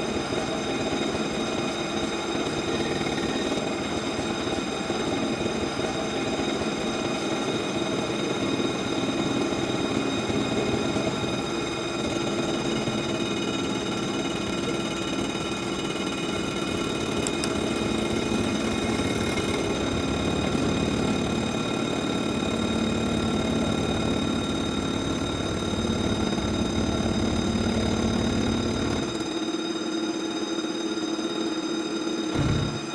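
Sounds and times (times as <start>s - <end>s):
milling machine spindle whine: 0.0s - 32.9s
milling machine cutting noise: 12.0s - 29.4s, 32.3s - 32.9s.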